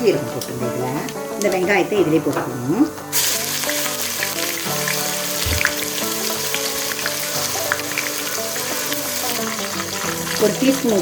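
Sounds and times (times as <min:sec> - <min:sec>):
background music: 0:00.0 - 0:11.0
onion paste sizzling in hot oil: 0:02.5 - 0:11.0.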